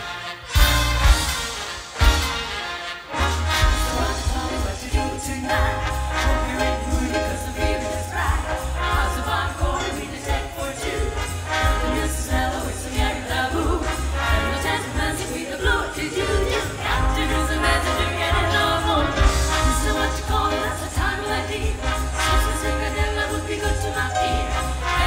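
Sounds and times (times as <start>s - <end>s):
big band playing: 0.0s - 25.0s.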